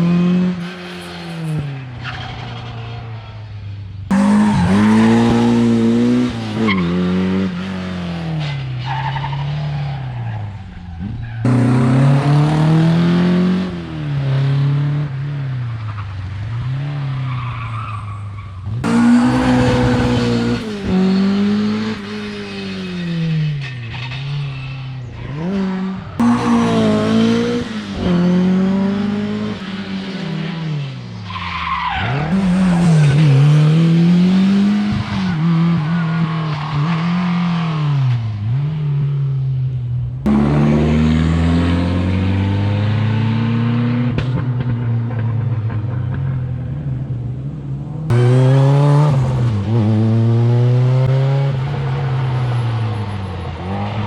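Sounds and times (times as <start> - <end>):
rally cars revving past: 11.4 - 15.2, 18.8 - 22.4, 25.2 - 30.7, 40.2 - 46.1, 48.1 - 54.0.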